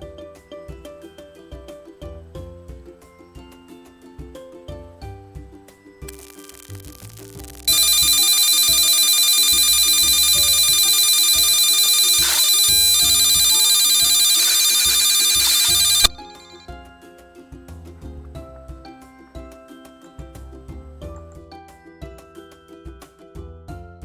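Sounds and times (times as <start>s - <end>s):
background music: 0.0s - 12.1s, 15.0s - 24.0s
shrill pulsing alarm tone: 7.7s - 16.7s.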